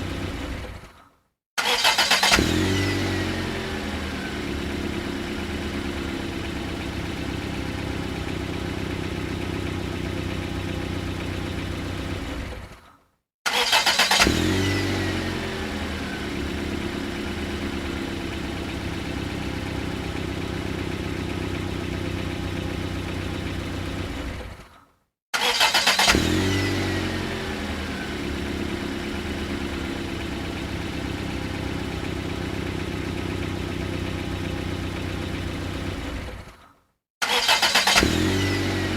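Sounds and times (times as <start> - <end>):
starter motor cranking: 1.6 - 2.8, 13.5 - 14.8, 25.4 - 26.5, 37.2 - 38.7
engine revving with falling whine: 2.0 - 7.0, 14.0 - 24.4, 25.7 - 36.4, 37.5 - 38.9
car engine idling: 3.4 - 12.6, 15.4 - 24.4, 27.2 - 36.4.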